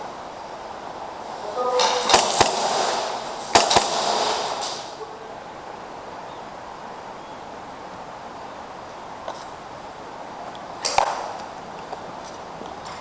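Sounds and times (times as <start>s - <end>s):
gas rushing noise: 0.0s - 7.0s
airsoft pistol shots: 2.0s - 5.0s.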